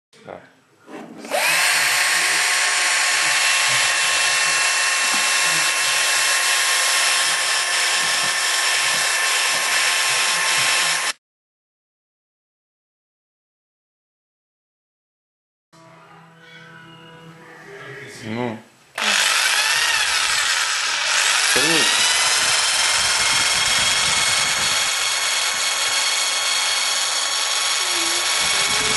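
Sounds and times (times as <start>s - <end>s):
electric drill whisk beating eggs: 1.3s - 11.2s, 19.0s - 28.9s
electric mixer whining: 1.3s - 11.2s, 19.0s - 28.9s.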